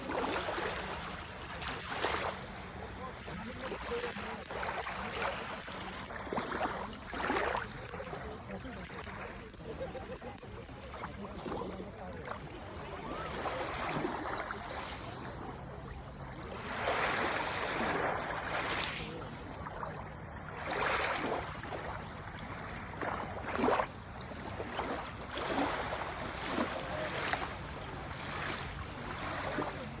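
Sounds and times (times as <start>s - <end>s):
lake waves lapping on shore: 0.0s - 30.0s.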